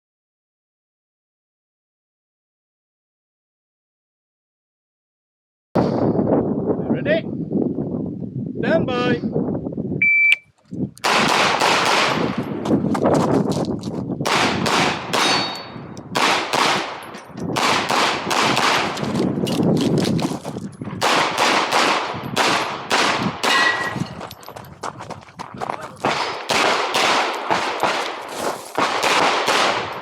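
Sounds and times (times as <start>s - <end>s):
pistol shots: 11.0s - 12.5s, 14.2s - 19.3s, 21.0s - 24.0s, 26.0s - 30.0s
ringing after shots: 15.2s - 15.8s.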